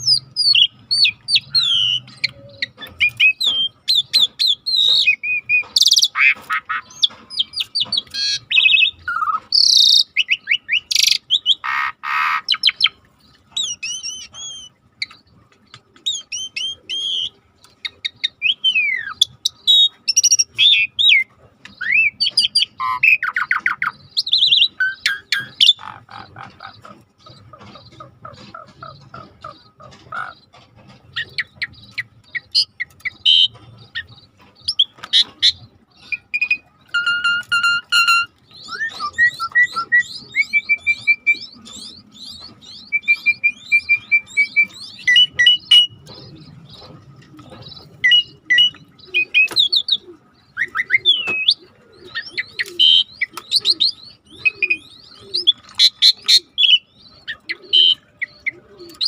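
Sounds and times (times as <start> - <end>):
starling singing whistles and trills: 0.0 - 59.0.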